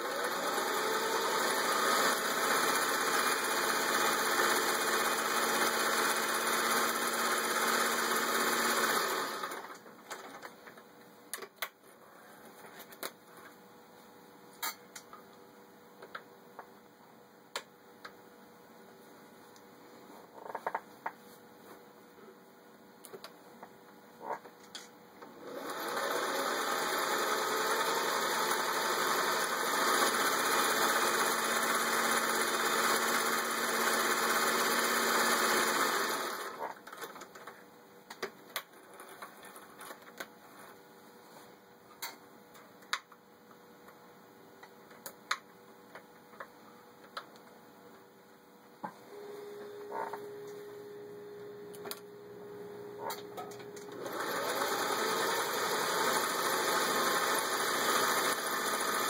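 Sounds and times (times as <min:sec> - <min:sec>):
sewing machine stitching: 0:00.0 - 0:09.8, 0:25.3 - 0:37.2, 0:53.0 - 0:59.0
low steady hum: 0:36.8 - 0:54.0.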